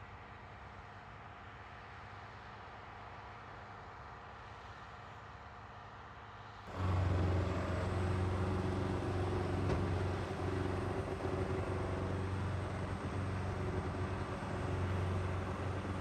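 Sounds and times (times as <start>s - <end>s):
machine tool humming: 6.7s - 16.0s.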